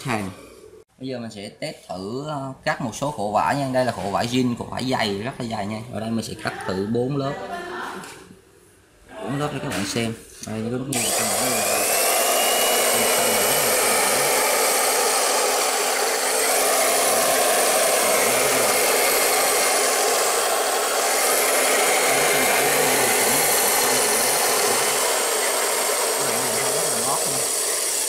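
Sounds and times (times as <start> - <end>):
electric cloth cutter running: 10.9 - 28.0.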